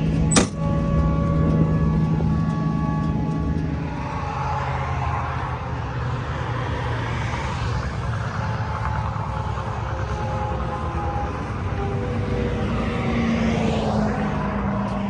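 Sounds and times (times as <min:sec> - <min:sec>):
road noise: 0:00.0 - 0:15.0
vehicle engine drone: 0:00.0 - 0:15.0.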